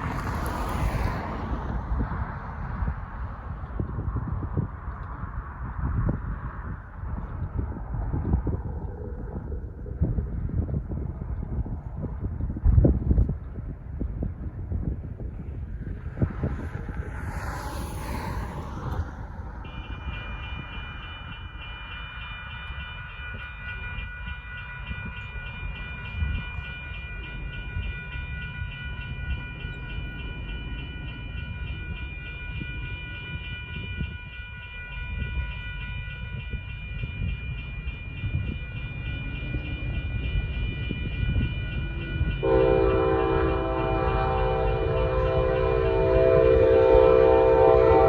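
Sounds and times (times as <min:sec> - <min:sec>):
freight train rumble: 0:00.0 - 0:48.0
railroad crossing bell ringing: 0:06.0 - 0:48.0
locomotive air horn: 0:42.4 - 0:48.0.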